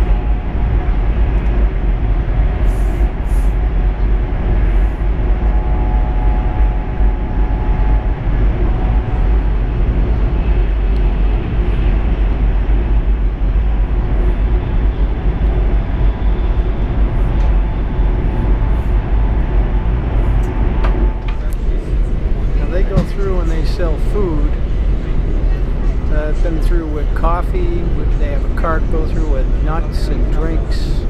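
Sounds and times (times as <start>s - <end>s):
train cabin rumble: 0.0s - 31.0s.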